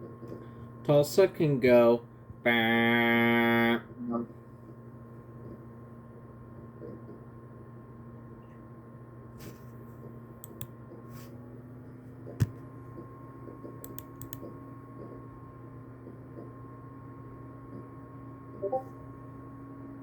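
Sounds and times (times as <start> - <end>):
steady hum: 0.0 - 20.0
computer keyboard clicks: 13.8 - 14.5.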